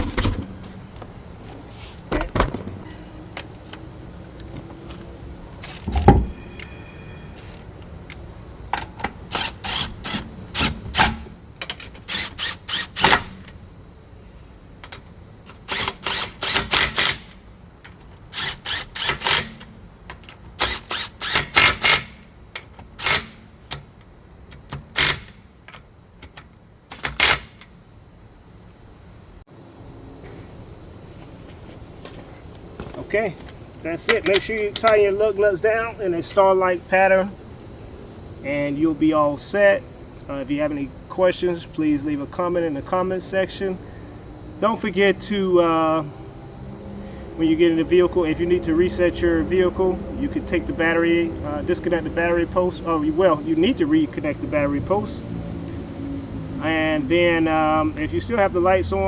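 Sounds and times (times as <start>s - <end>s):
wheel thumping onto hub: 0.0s - 1.2s, 5.6s - 6.7s
socket ratchet clicking: 15.5s - 23.9s.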